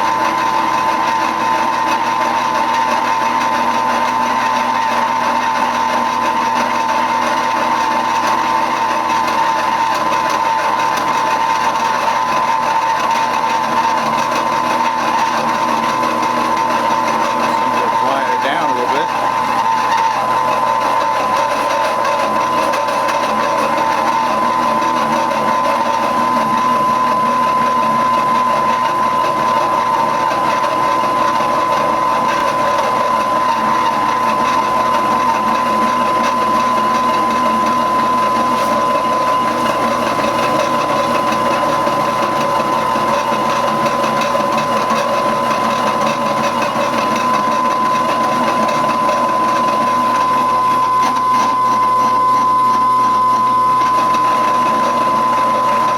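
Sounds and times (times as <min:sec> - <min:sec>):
milling machine running: 0:00.0 - 0:55.9
saw cutting steel: 0:00.0 - 0:55.9
high-pitched whine: 0:05.8 - 0:55.9.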